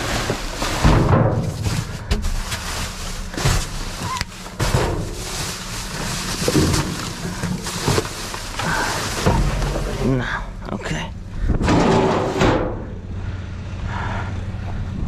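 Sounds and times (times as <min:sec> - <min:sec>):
rustling trash: 0:00.0 - 0:10.6
low rumble: 0:00.0 - 0:15.0
knocks in dumpster: 0:00.7 - 0:02.2, 0:04.6 - 0:05.2, 0:09.2 - 0:10.1, 0:11.6 - 0:13.0.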